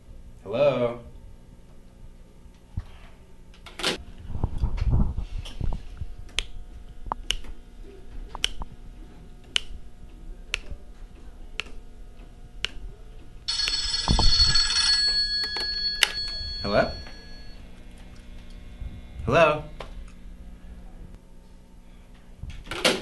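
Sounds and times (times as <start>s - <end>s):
telephone ringing loudly: 13.5s - 17.6s.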